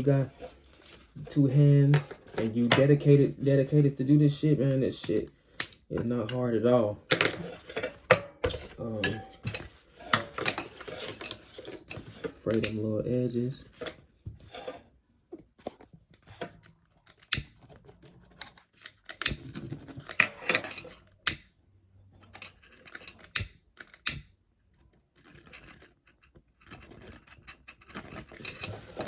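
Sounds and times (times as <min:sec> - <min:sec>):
fabric scratching and rustling: 0:13.8 - 0:15.0, 0:24.8 - 0:29.0.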